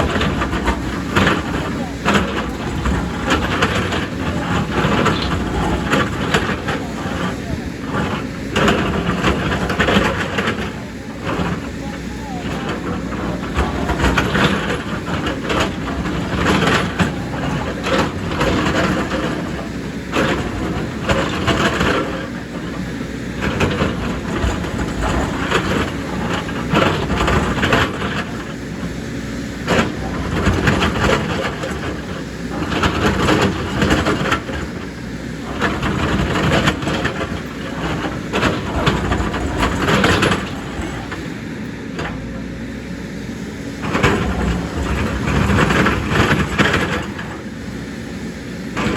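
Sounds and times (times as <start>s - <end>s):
excavator diesel engine: 0.0s - 48.9s.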